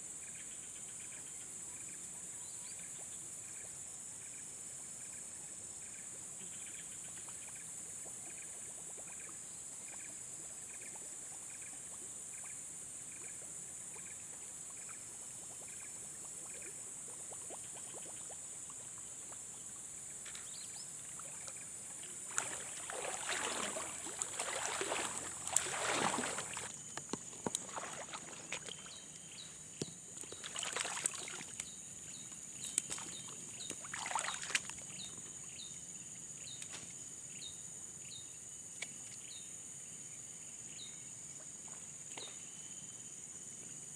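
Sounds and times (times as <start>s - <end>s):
splashing: 21.2s - 28.9s, 30.2s - 31.6s, 32.8s - 34.8s.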